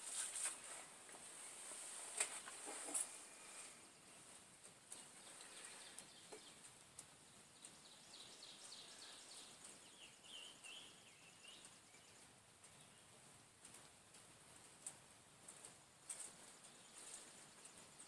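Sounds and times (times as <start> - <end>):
faint bird chirps: 3.0 - 13.2.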